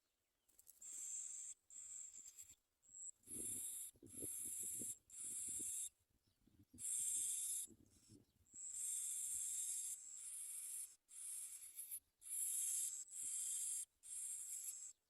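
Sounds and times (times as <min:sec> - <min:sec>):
nestlings begging hissing calls: 0:03.3 - 0:05.9, 0:06.8 - 0:07.7, 0:08.6 - 0:14.9.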